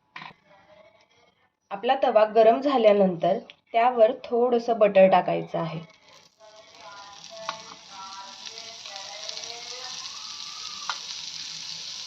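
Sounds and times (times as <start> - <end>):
butter sizzling on a hot pan: 6.0 - 12.0.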